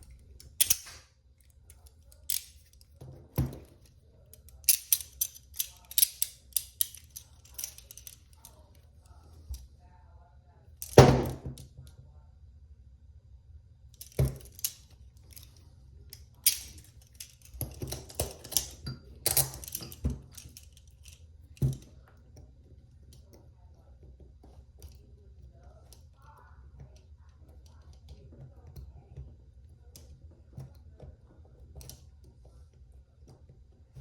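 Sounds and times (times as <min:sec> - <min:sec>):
handcuffs clicking and clinking: 0:00.0 - 0:08.7, 0:10.8 - 0:11.4, 0:14.0 - 0:21.9
loud handcuff clack: 0:00.4 - 0:01.0, 0:01.7 - 0:08.5, 0:10.8 - 0:11.4, 0:14.0 - 0:15.5, 0:16.4 - 0:21.8.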